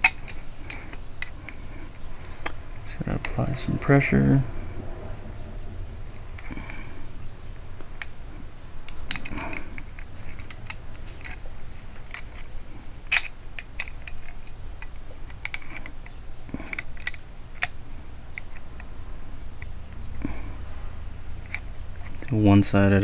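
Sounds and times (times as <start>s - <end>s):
small metal lock parts clicking: 0.0s - 2.6s, 8.8s - 18.9s, 21.4s - 22.4s.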